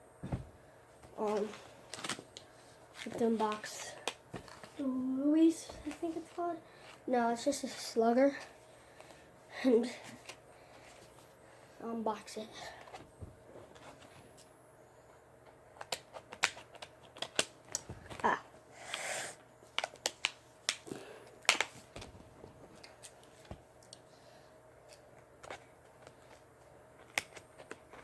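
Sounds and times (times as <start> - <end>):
packaging clicks and snaps: 15.8 - 18.2, 19.7 - 21.8, 27.0 - 28.0.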